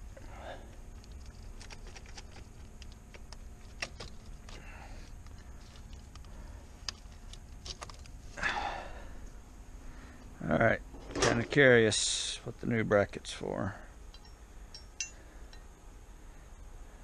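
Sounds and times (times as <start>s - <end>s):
low steady hum: 0.0s - 17.0s
small car parts clinking: 14.1s - 15.7s.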